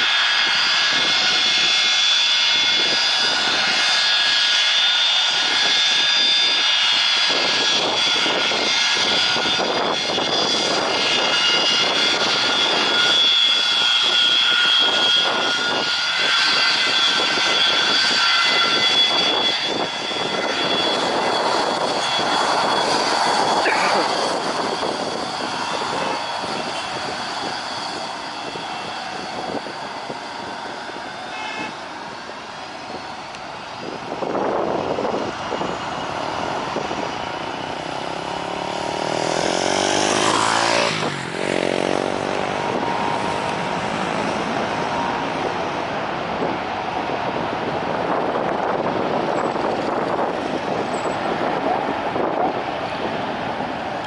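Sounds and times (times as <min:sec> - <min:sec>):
roadside traffic noise: 0:00.0 - 0:54.0
vehicle passing close by: 0:38.0 - 0:44.6.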